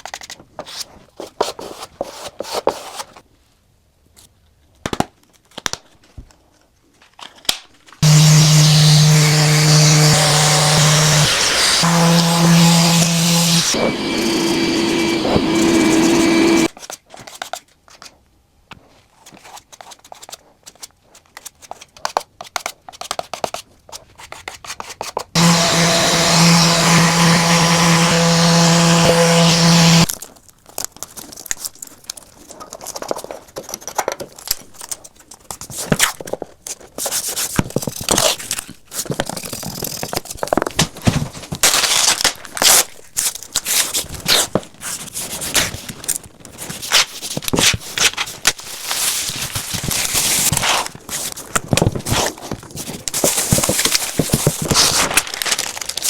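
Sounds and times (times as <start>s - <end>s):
power tool running: 8.0s - 16.7s, 25.4s - 30.1s.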